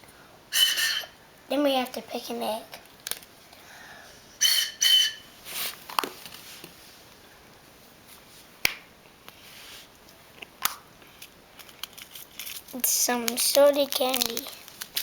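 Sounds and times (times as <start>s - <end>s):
high whistle toots: 0.5s - 1.2s, 4.4s - 5.4s.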